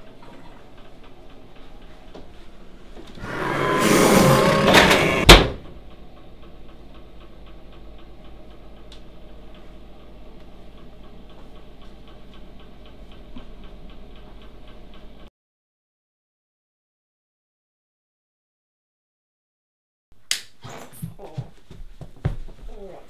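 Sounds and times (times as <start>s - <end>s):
low room hum: 0.0s - 15.3s.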